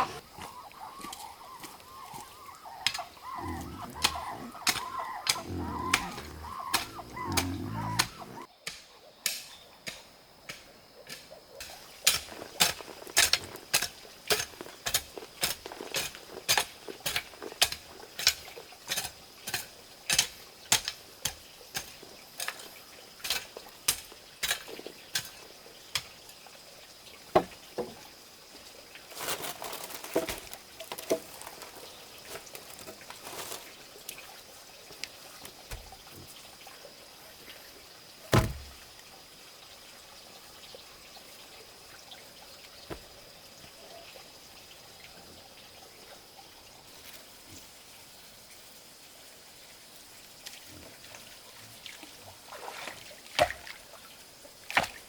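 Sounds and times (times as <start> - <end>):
short bird calls: 0.0 - 8.5.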